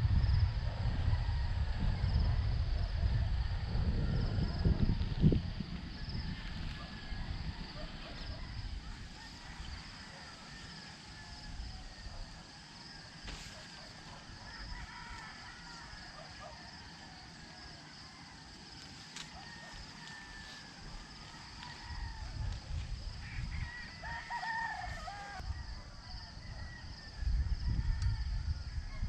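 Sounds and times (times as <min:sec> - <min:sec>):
faint chicken calls: 0:05.9 - 0:29.0.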